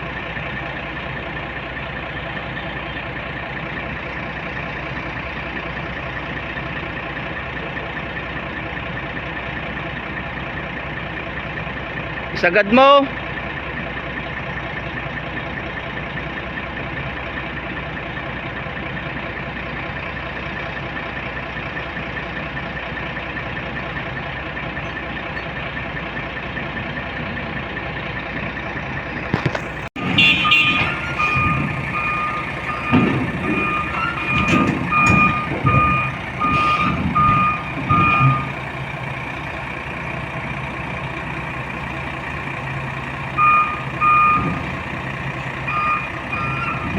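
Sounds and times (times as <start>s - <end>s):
heavy diesel engine running: 0.0s - 46.9s
warning alarm beeping: 30.0s - 39.4s, 40.2s - 46.9s.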